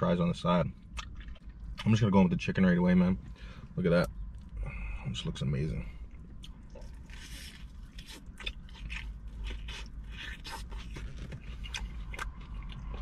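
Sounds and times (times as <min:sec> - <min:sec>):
chewing mouth clicks: 0:06.2 - 0:13.0
crunching bite: 0:06.4 - 0:13.0.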